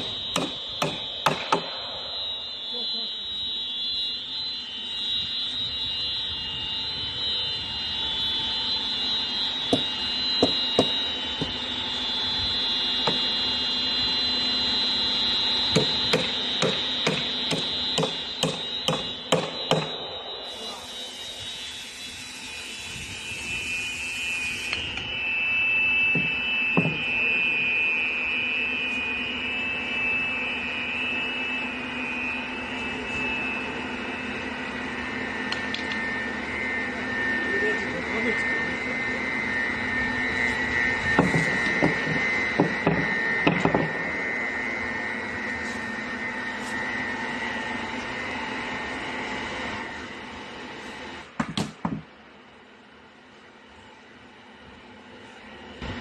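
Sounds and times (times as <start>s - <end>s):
hammer blows: 0.0s - 2.2s, 9.5s - 11.7s, 12.9s - 13.4s, 15.7s - 25.4s, 26.0s - 27.8s, 40.4s - 44.0s
high-pitched machine whine: 0.0s - 56.0s.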